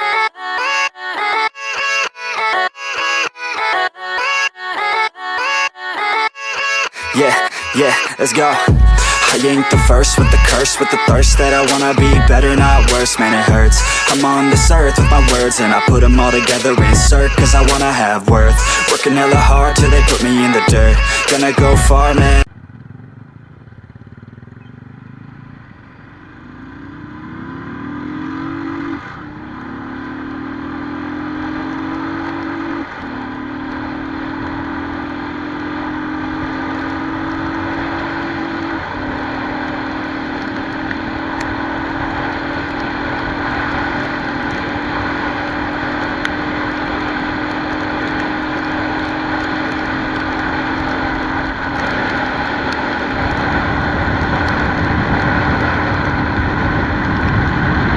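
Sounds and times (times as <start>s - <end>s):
motorcycle engine accelerating: 7.0s - 57.9s
rush of wind: 40.7s - 57.9s.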